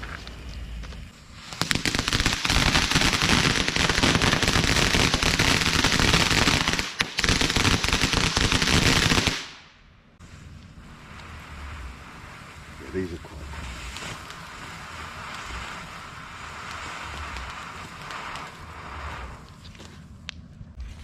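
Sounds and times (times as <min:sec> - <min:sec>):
firecrackers banging rapidly: 0:01.4 - 0:09.6.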